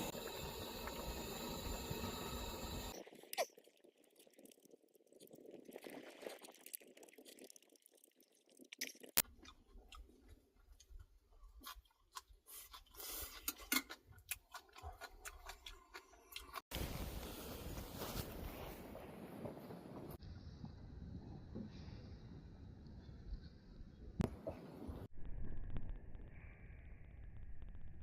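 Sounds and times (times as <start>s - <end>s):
person chewing with crunches: 5.2s - 16.7s.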